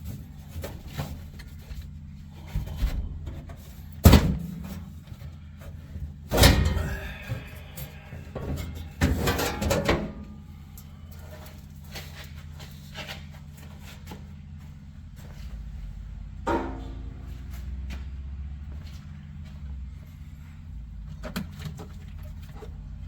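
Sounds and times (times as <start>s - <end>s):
rattling clatter: 6.3s - 10.4s.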